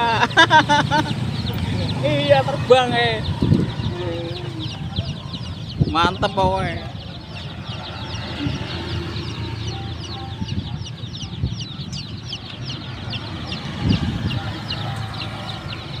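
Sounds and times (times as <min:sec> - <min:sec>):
chicks peeping: 0:00.0 - 0:16.0
wind rumble on microphone: 0:01.2 - 0:16.0.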